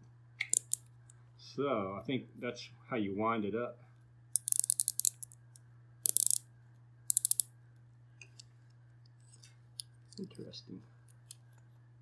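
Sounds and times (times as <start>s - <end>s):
ratchet gear clicking: 4.4s - 5.3s, 6.1s - 6.4s, 7.1s - 7.5s.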